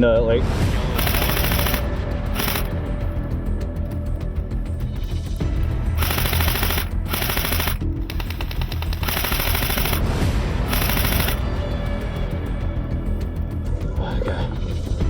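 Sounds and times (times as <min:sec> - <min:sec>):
background music: 0:00.0 - 0:15.0
airsoft guns firing full auto: 0:00.9 - 0:02.8, 0:06.0 - 0:11.4.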